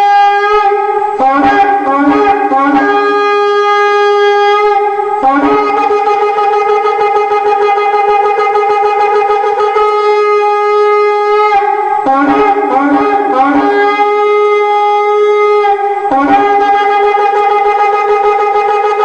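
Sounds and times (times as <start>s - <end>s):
shofar blasts: 0.0s - 19.0s.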